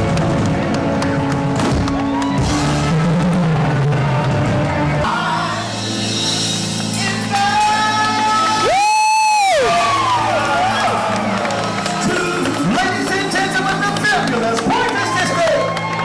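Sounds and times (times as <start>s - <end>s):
live pop-rock band playing: 0.0s - 8.8s
drums: 0.0s - 15.9s.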